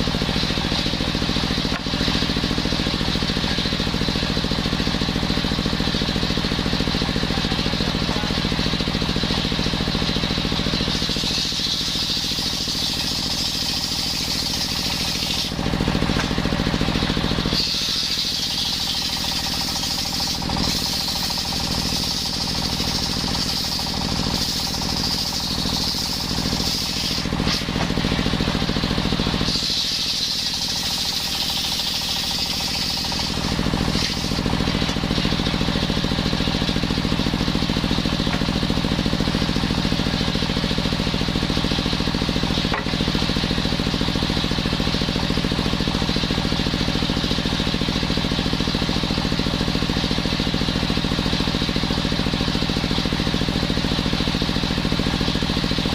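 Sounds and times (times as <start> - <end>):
saw blade cutting wood: 0.0 - 6.2, 6.8 - 40.4, 42.0 - 43.3
circular saw engine running: 0.0 - 55.9.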